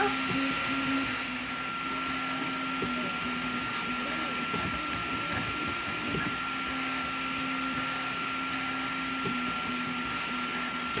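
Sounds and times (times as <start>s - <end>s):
stepper motors humming: 0.0s - 7.6s
printer fans whirring: 0.0s - 11.0s.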